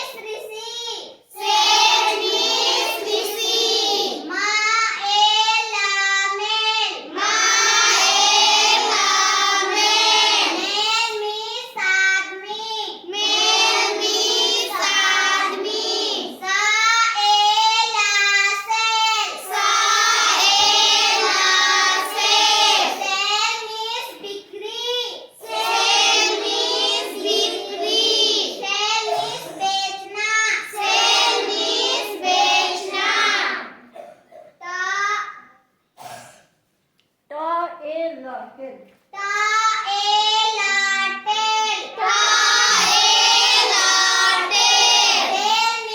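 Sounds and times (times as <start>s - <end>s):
child singing in a sing-song way: 8.5s - 33.5s.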